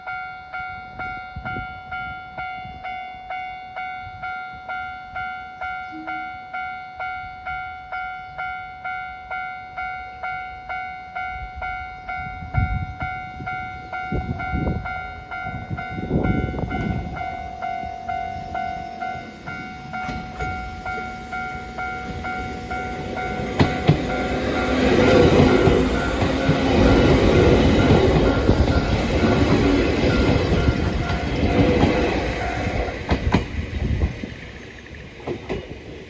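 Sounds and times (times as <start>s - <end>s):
level crossing warning bell: 0.0s - 33.4s
train rumbling past: 10.2s - 36.0s.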